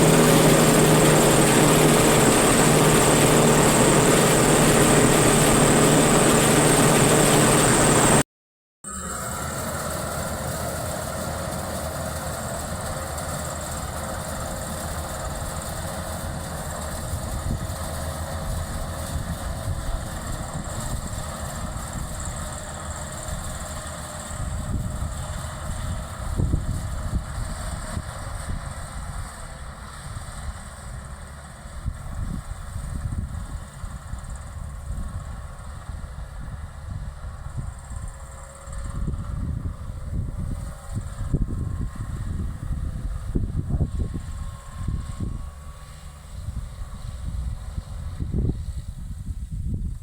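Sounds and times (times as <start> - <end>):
combine harvester running: 0.0 - 8.2, 8.9 - 31.8.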